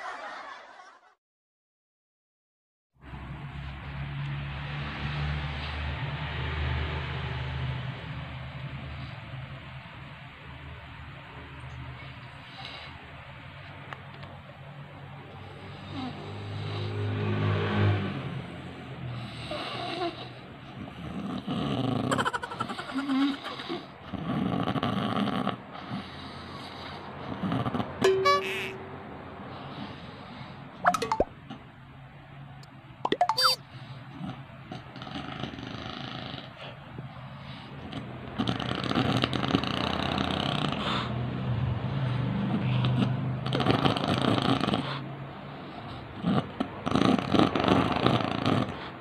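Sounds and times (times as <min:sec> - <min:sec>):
person snoring with croaking rattle: 0:22.9 - 0:25.6, 0:35.0 - 0:36.5, 0:38.0 - 0:40.8, 0:42.9 - 0:45.0, 0:46.2 - 0:49.0.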